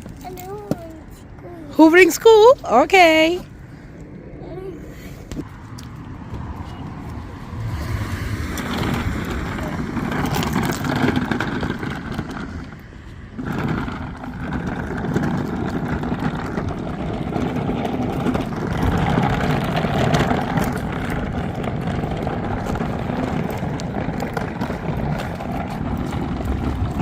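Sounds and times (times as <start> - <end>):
car cabin rumble: 6.4 - 27.0.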